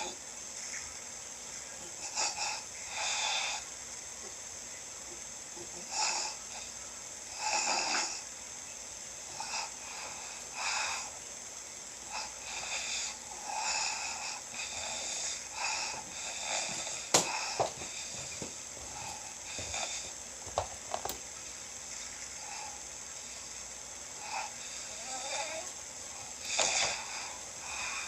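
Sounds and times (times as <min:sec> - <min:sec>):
man snoring: 0:01.8 - 0:03.7, 0:05.6 - 0:08.3, 0:12.0 - 0:20.2, 0:24.2 - 0:28.0.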